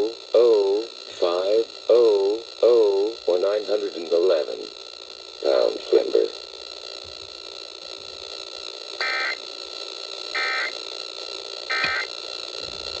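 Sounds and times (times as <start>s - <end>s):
steady background hiss: 0.0s - 13.0s
alert data tone bursts: 9.0s - 9.4s, 10.3s - 10.8s, 11.7s - 12.2s.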